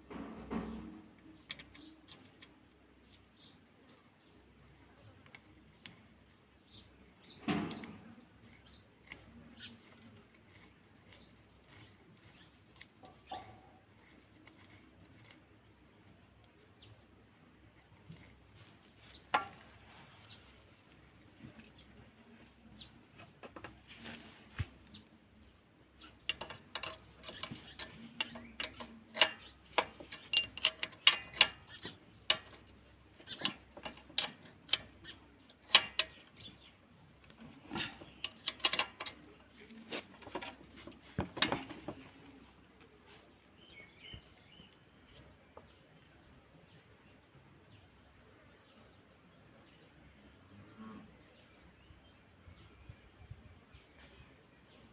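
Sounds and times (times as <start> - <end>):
metal tools clinking: 26.0 - 42.4.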